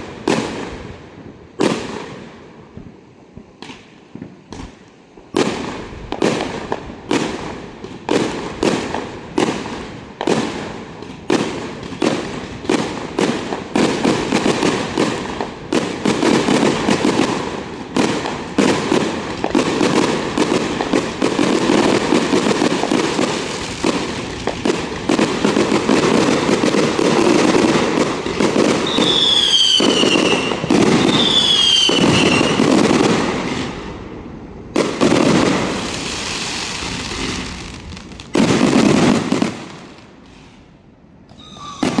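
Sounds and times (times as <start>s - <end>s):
fireworks bangs and crackling: 0.0s - 42.0s
whistling firework shells: 25.1s - 32.8s, 41.3s - 42.0s.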